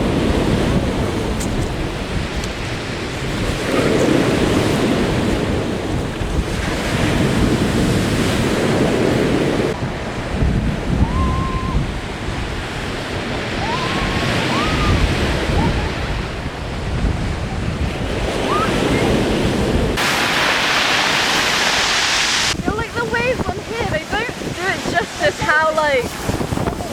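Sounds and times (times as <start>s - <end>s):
sea waves breaking: 0.0s - 26.9s
wind buffeting the microphone: 0.0s - 26.9s.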